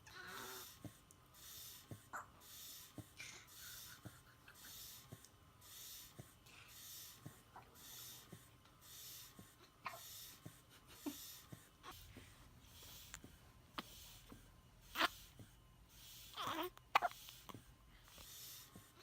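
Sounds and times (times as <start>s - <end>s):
baby hiccuping: 14.9s - 15.2s, 16.4s - 17.2s.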